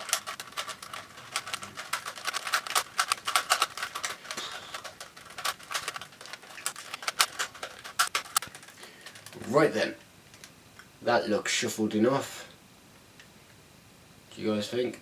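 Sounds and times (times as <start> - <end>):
plastic puzzle cube clicking: 0.0 - 9.4.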